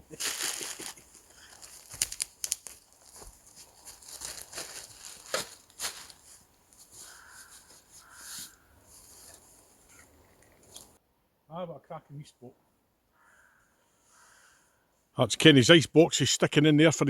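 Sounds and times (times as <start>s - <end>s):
plastic bag rustling: 0.2s - 6.4s.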